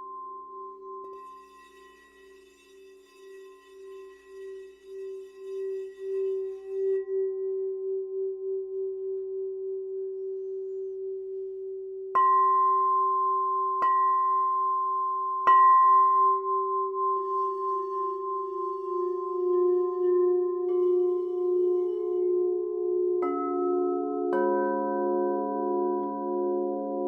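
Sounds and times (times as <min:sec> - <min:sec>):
low singing bowl ringing: 0:00.0 - 0:10.8.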